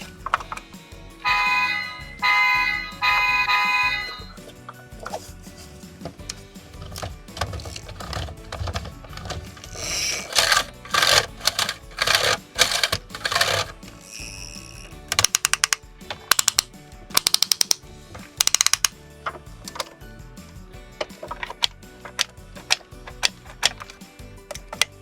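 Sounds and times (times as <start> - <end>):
model truck parts scraping: 4.7 - 14.3
sharp ratcheting clicks: 6.9 - 19.0.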